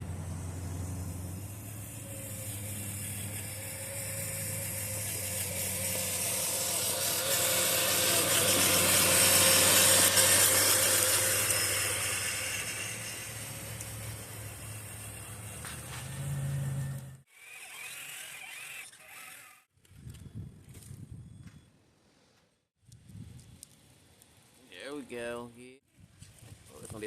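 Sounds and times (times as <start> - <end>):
electric motor and gears whining: 0.0 - 21.1.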